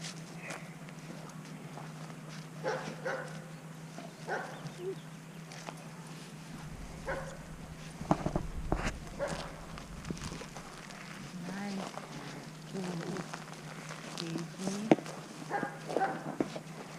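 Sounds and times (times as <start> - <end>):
dog yelping barks: 2.6 - 3.4, 4.3 - 5.0, 7.0 - 7.5, 9.1 - 9.6, 15.5 - 16.3.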